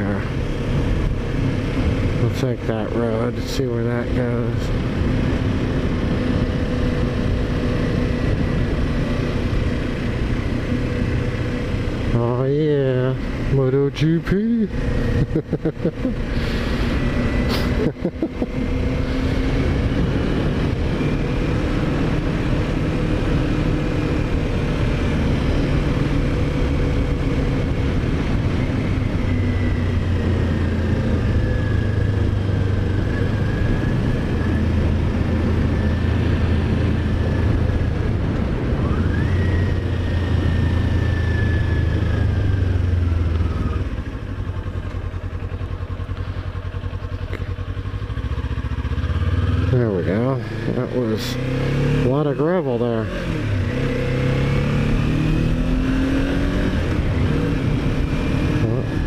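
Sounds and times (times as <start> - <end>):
motorcycle engine running: 0.0 - 59.0
road noise on gravel: 0.0 - 59.0
wind noise: 18.5 - 43.9.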